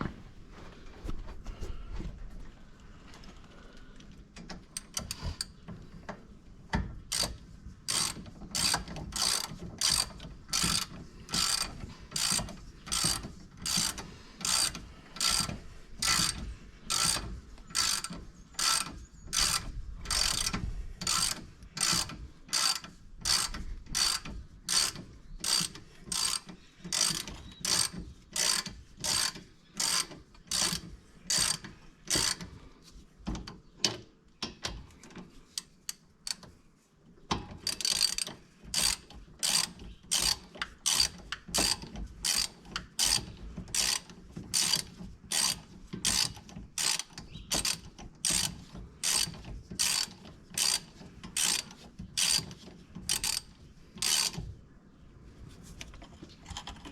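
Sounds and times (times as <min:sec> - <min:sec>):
ratchet wrench clicking: 0:07.1 - 0:32.4, 0:37.6 - 0:54.4.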